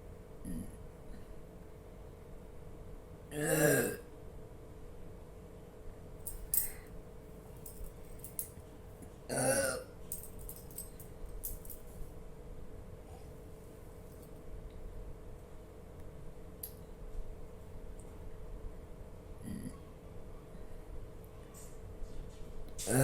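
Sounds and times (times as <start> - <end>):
loud burps: 0.4 - 0.8, 3.3 - 4.1, 9.3 - 9.9, 19.4 - 19.8.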